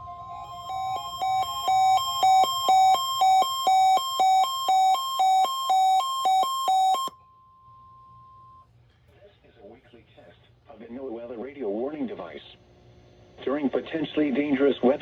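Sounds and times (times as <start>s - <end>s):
steady alarm tone: 0.2s - 7.1s
two-pitch alarm beeping: 0.3s - 7.1s.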